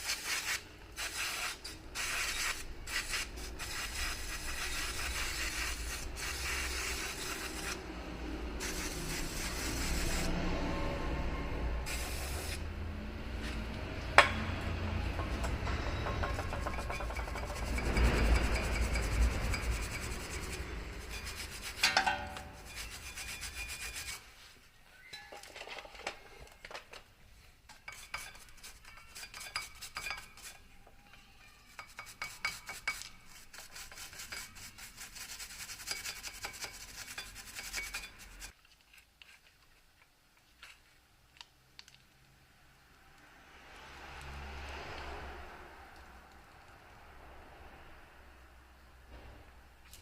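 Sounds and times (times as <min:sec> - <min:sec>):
scraping on metal brake parts: 0:13.4 - 0:24.3, 0:35.7 - 0:38.6.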